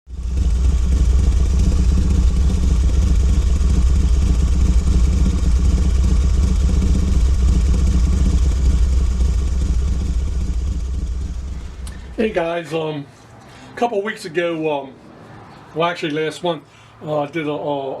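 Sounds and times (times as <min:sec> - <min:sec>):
machine humming with flutter: 0:00.1 - 0:12.2.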